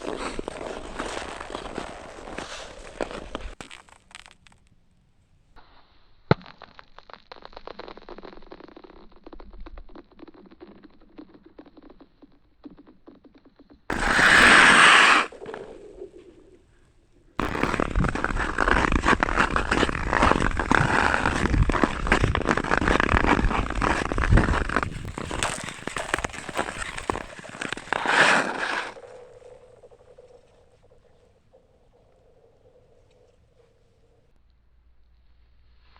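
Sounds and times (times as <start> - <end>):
ice skates scraping on ice: 0.0 - 4.5, 13.9 - 16.7, 17.4 - 34.0
ice crackling: 0.0 - 5.0, 6.1 - 34.4.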